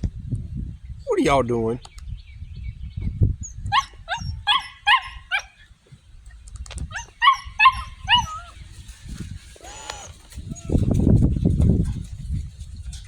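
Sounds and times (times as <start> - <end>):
puppies yipping: 3.4 - 5.8, 6.9 - 11.2.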